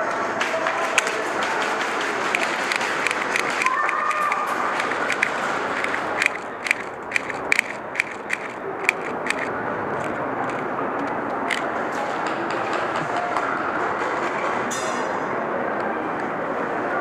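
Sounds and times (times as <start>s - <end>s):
airsoft guns popping: 0.9s - 11.7s.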